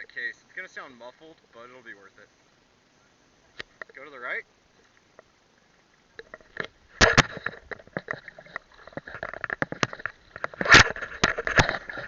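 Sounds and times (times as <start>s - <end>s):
water splashing: 4.8s - 12.0s.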